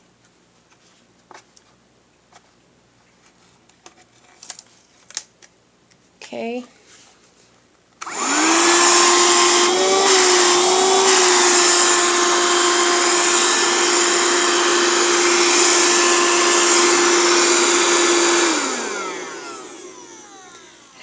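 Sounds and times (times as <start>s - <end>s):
vacuum cleaner motor whining: 8.0s - 21.0s.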